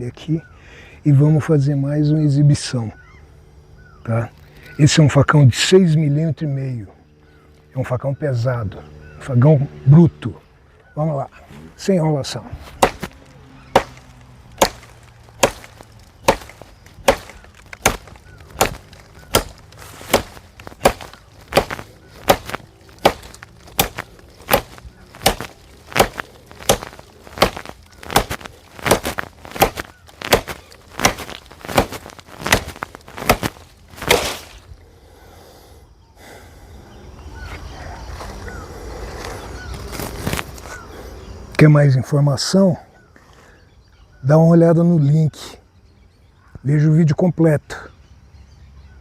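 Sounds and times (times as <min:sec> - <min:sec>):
machete chopping wood: 0:12.6 - 0:34.6.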